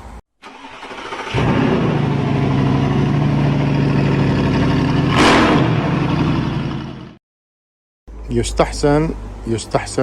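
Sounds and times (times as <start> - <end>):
engine idling: 0.4 - 7.2
engine revving: 0.4 - 7.2.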